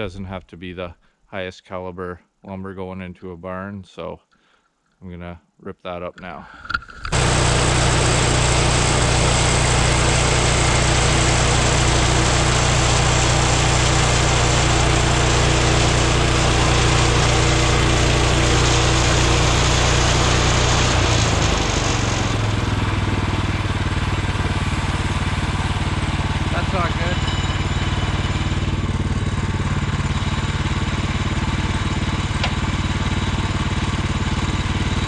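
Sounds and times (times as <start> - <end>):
sawmill engine running under load: 7.1 - 35.0.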